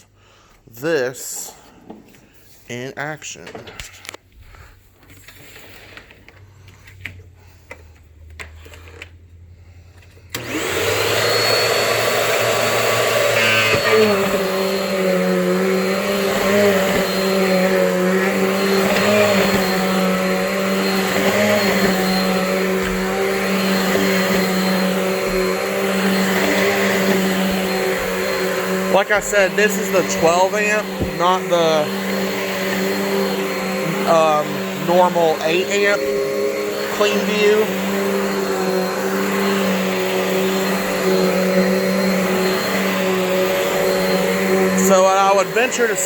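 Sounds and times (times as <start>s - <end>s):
vacuum cleaner running: 9.6s - 46.0s.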